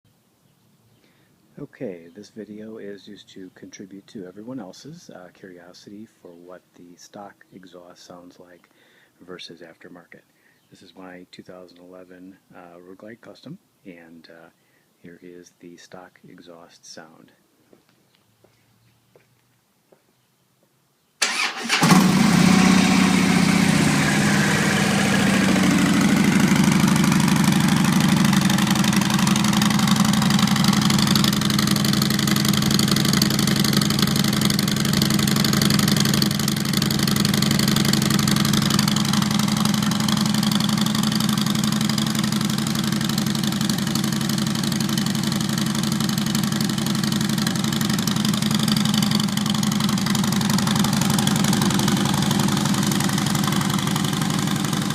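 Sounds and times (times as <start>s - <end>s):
motorcycle engine idling: 21.3s - 54.9s.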